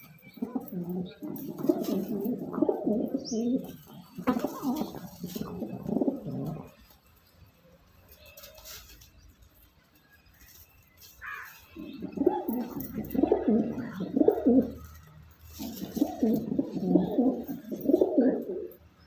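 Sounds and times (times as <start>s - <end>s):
pigeon cooing: 0.3s - 6.8s, 11.8s - 18.8s.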